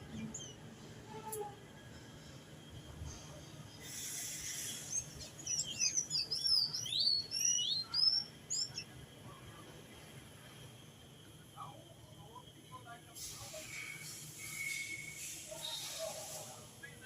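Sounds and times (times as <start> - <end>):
songbird singing: 0.0 - 0.7, 4.6 - 9.0
brief hiss: 13.2 - 16.8.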